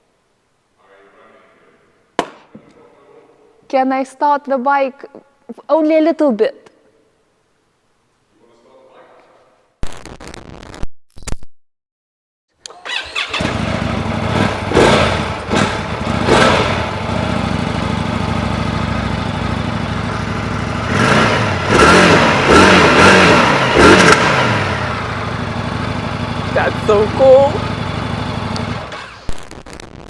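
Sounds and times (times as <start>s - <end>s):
motorcycle engine idling: 12.7s - 29.3s
motorcycle engine revving: 12.7s - 29.4s.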